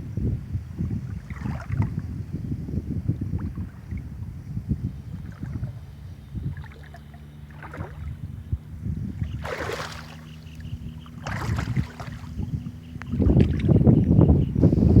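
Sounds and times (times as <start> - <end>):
low motor hum: 0.0 - 15.0
wind buffeting microphone: 0.0 - 15.0.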